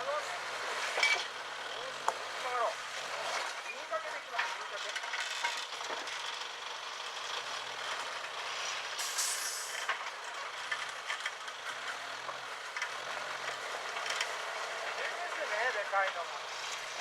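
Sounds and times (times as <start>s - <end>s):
sharp hiss: 9.0s - 9.8s.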